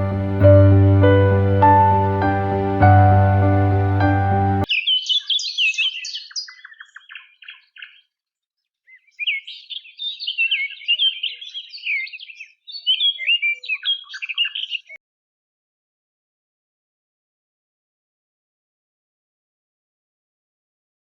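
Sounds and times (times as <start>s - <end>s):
small songbird singing: 4.7s - 15.0s.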